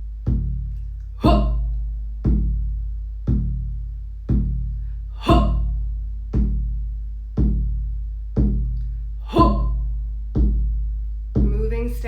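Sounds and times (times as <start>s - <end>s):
deep drum booms: 0.0s - 12.0s
woman shouting: 1.2s - 1.6s, 5.2s - 5.6s, 9.3s - 9.7s.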